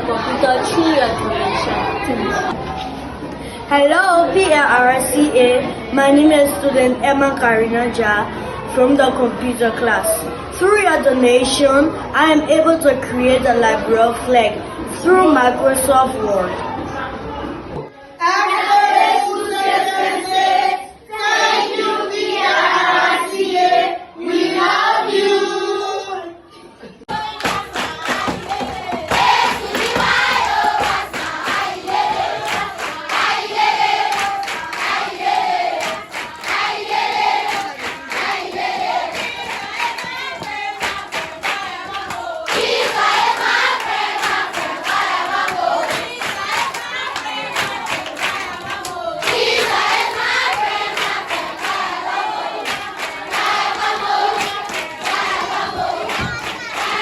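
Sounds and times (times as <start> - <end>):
group singing: 18.2 - 26.4, 27.1 - 57.0
hand clapping: 27.1 - 57.0.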